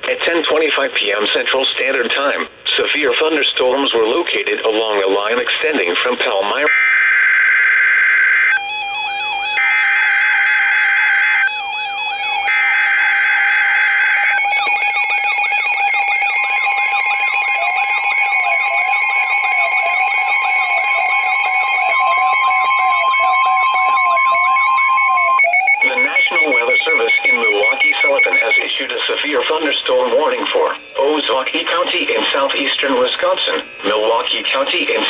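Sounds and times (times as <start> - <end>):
rising and falling alarm: 6.7 - 28.8
screeching data bursts: 8.6 - 28.7
steady warning alert tone: 8.6 - 28.8.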